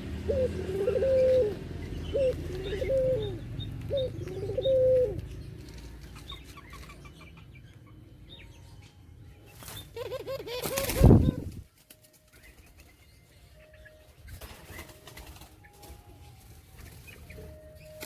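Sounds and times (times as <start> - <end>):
dove cooing: 0.0 - 7.4, 9.9 - 11.6
wings fluttering: 9.5 - 13.1, 14.3 - 18.0.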